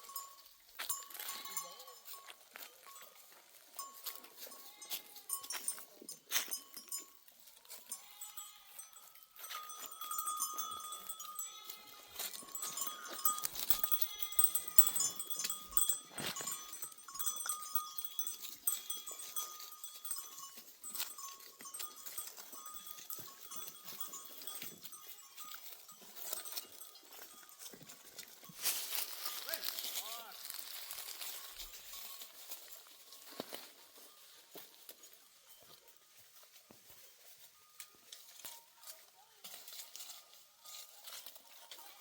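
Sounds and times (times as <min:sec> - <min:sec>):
sheep and goats bleating: 0:00.0 - 0:32.1
animal bells ringing: 0:00.0 - 0:42.0.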